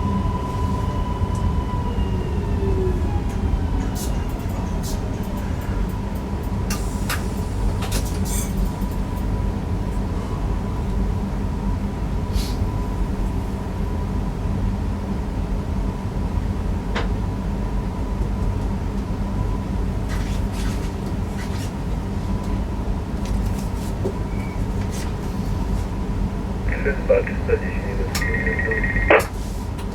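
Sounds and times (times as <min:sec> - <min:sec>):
train low rumble: 0:00.0 - 0:29.9
constant high hum: 0:25.3 - 0:29.9.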